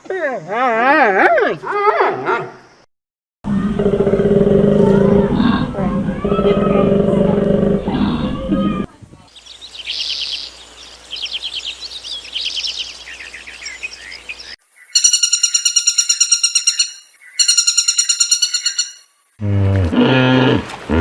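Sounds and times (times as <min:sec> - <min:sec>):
songbird trilling: 0:09.3 - 0:19.1.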